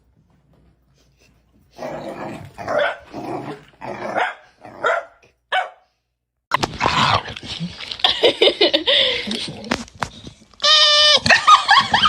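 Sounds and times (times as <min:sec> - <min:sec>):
dog barking: 0:02.7 - 0:03.1, 0:04.1 - 0:05.9.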